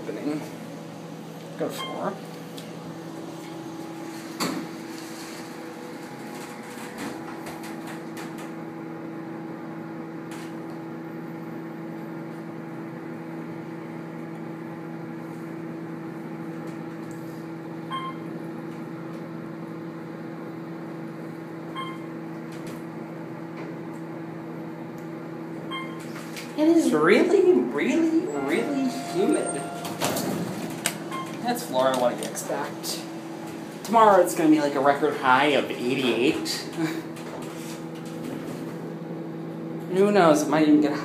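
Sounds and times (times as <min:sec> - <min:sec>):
elevator electric hum: 0:00.0 - 0:41.0
short electronic beeps: 0:28.3 - 0:30.2.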